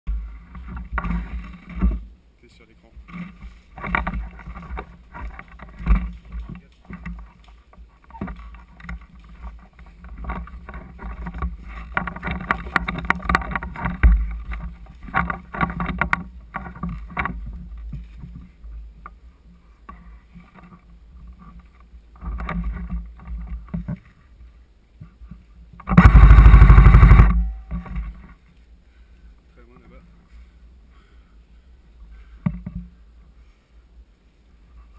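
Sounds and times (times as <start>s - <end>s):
rustling and knocks: 0.1s - 2.1s, 3.0s - 19.2s, 19.8s - 24.2s, 25.0s - 28.4s
airsoft gun automatic fire: 25.9s - 27.5s.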